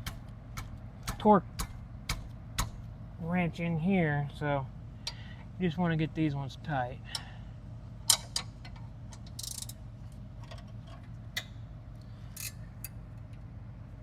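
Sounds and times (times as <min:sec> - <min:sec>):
ratchet wrench clicking: 0:09.2 - 0:09.8, 0:12.4 - 0:13.0.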